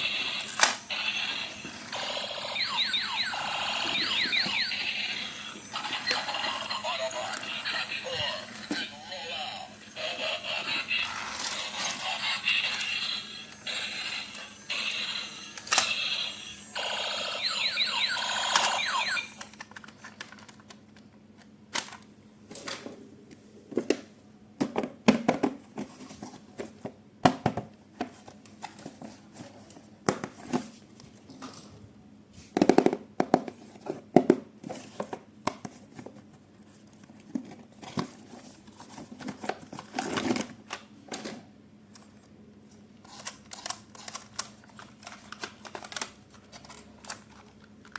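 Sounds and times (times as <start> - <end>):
plastic toy parts clicking: 43.0 - 47.9.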